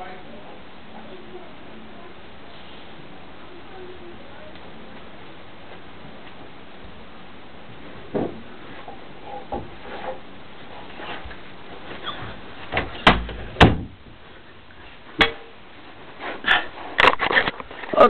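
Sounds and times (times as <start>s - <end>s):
steady hiss: 0.0s - 17.0s
knocks and clunks of handling: 12.1s - 14.1s.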